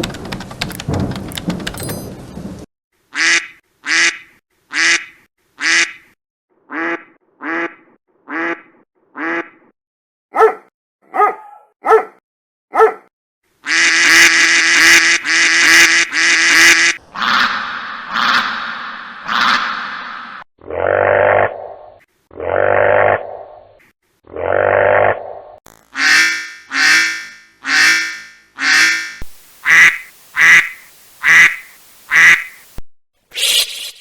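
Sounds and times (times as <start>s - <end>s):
duck quacking: 3.1s - 9.7s, 13.6s - 19.7s, 26.0s - 32.6s
rain-like noise: 29.3s - 32.8s.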